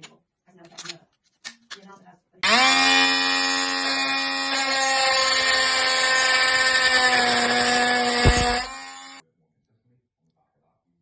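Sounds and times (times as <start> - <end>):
multi-tool cutting metal: 2.4 - 9.2
sharp knock: 8.2 - 8.8.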